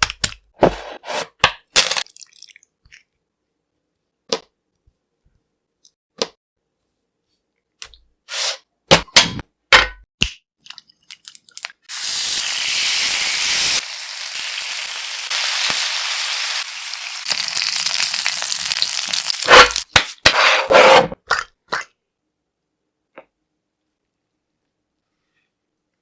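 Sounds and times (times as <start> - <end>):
chicken sizzling in hot oil: 11.9 - 19.9.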